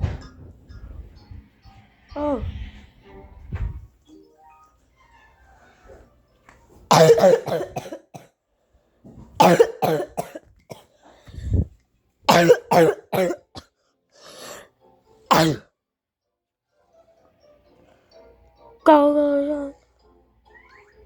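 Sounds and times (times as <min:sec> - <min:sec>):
person coughing: 0:06.9 - 0:08.3, 0:09.4 - 0:10.9, 0:12.3 - 0:13.7, 0:15.3 - 0:15.6.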